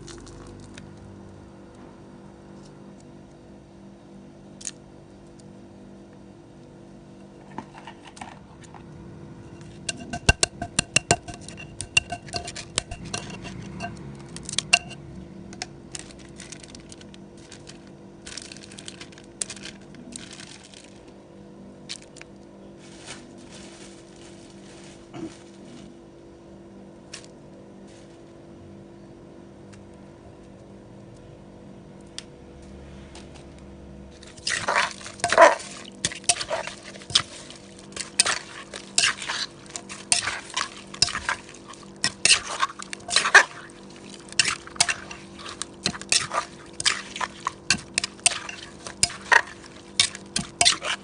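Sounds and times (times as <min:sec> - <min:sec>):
low room hum: 0:00.0 - 0:51.0
wet clattering of salad tossing: 0:09.6 - 0:15.0, 0:34.2 - 0:51.0.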